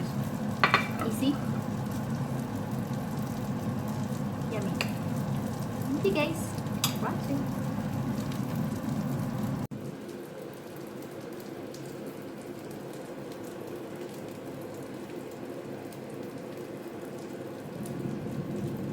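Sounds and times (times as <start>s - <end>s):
steady crackling hiss: 0.0s - 18.9s.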